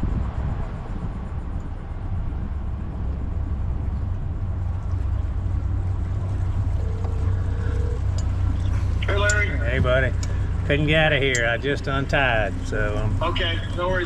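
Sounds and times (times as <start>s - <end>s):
outboard engine idling: 0.7s - 14.0s
short steady tone: 6.5s - 9.8s.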